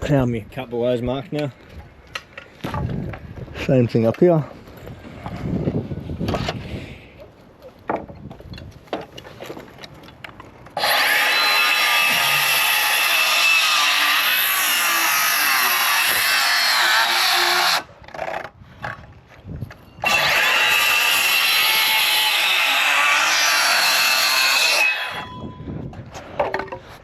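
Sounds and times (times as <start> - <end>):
circular saw cutting timber: 10.8 - 18.4, 20.0 - 25.4.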